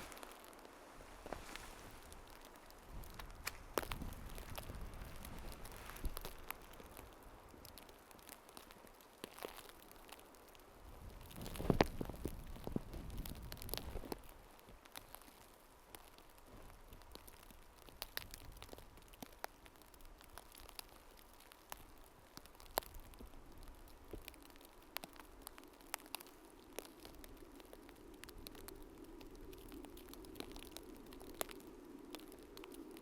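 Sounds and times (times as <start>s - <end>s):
fire rushing: 0.0s - 14.6s
campfire crackling: 0.0s - 33.0s.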